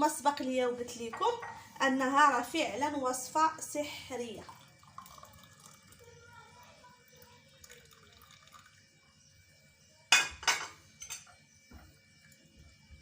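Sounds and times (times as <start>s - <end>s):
glass clinking: 10.1s - 11.4s.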